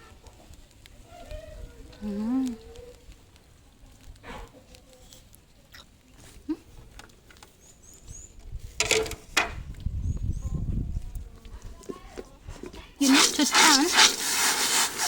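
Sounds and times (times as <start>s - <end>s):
peanuts rattling in a pan: 13.0s - 15.0s.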